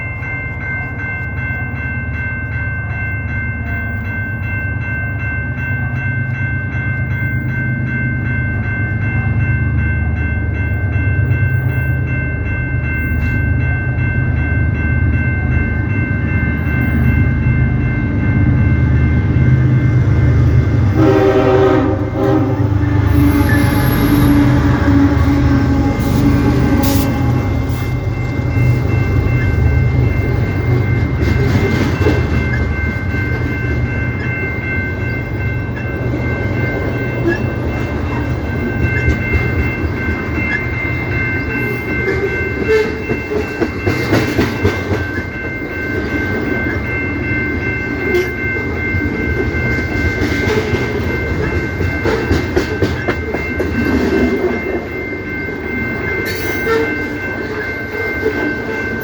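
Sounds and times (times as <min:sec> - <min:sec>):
train rumbling past: 0:00.0 - 0:59.0
train horn blast: 0:20.9 - 0:27.8.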